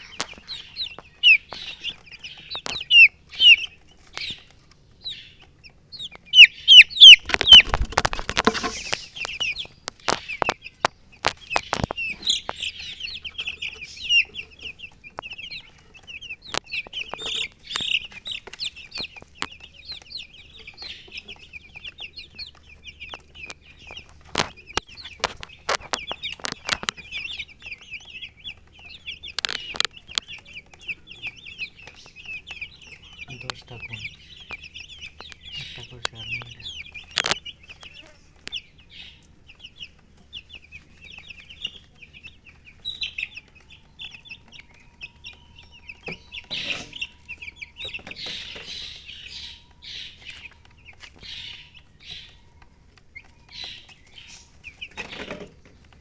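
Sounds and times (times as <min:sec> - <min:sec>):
chicks peeping: 0:00.0 - 0:56.0
sharp clicks: 0:06.5 - 0:20.9, 0:22.4 - 0:39.0
knocking and rustling: 0:07.1 - 0:10.6, 0:54.3 - 0:56.0.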